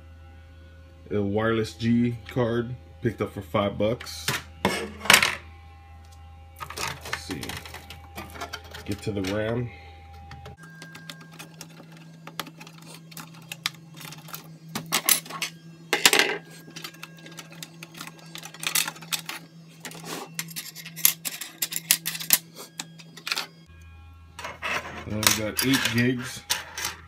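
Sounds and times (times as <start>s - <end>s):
ram sticks clicking and clattering: 6.6s - 9.4s, 10.8s - 23.5s.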